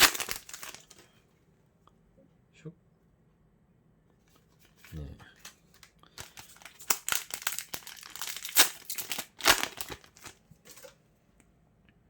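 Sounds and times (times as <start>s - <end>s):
foil wrapper crinkling and tearing: 0.0s - 1.1s, 4.6s - 10.9s.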